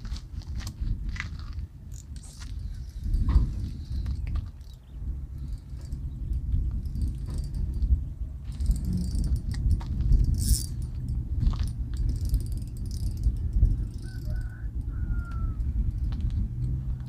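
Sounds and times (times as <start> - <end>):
wind buffeting microphone: 0.0 - 17.0
high rattle: 1.9 - 14.9.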